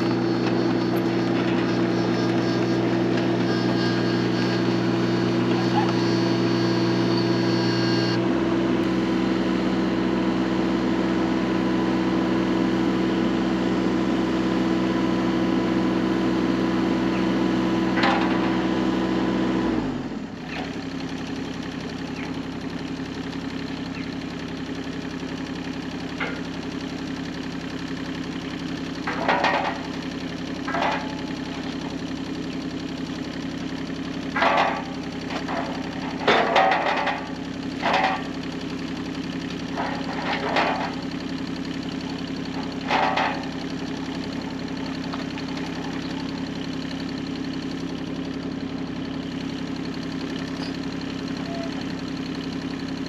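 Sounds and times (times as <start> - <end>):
heavy machine engine running: 0.0 - 53.0.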